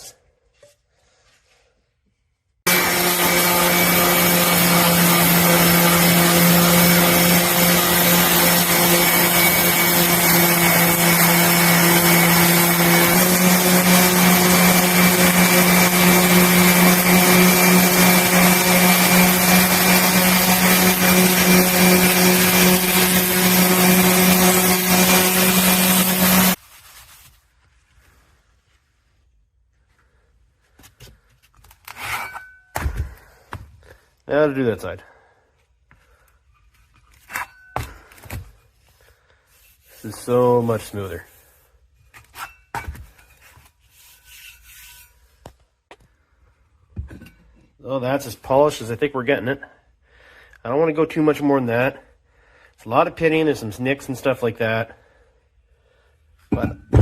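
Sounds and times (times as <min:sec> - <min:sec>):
electric power tool running: 0:02.7 - 0:26.6.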